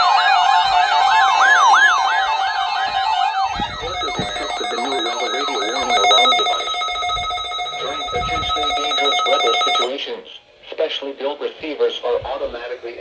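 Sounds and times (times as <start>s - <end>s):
electronic siren alarm warbling: 0.9s - 9.9s.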